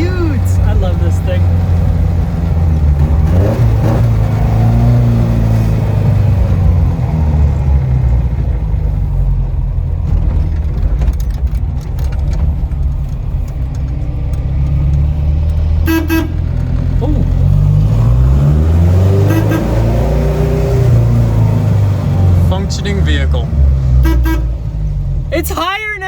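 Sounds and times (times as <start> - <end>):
car engine running: 0.0 - 26.0.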